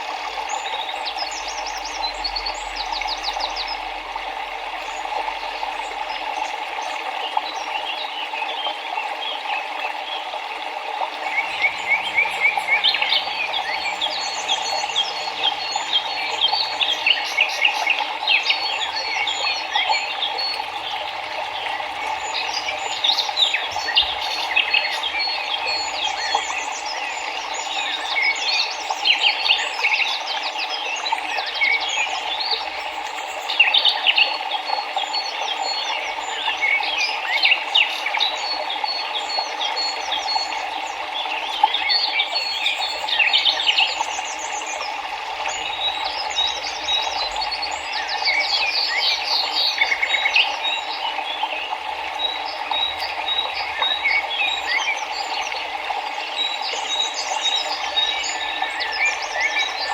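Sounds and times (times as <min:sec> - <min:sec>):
river flowing: 0:00.0 - 0:59.9
birds chirping and trilling: 0:11.2 - 0:30.2.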